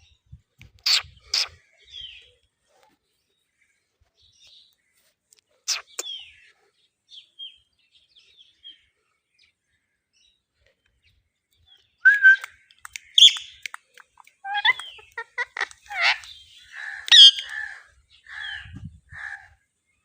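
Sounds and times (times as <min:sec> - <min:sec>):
parrot chirping: 0:12.0 - 0:13.7, 0:14.4 - 0:16.4, 0:17.0 - 0:17.5.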